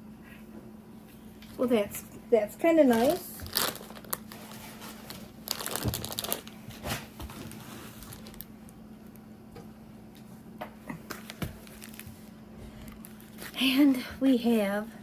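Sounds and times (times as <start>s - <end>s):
faint steady hum: 0.0s - 15.0s
plastic packaging crinkling: 2.8s - 9.2s, 11.1s - 13.6s.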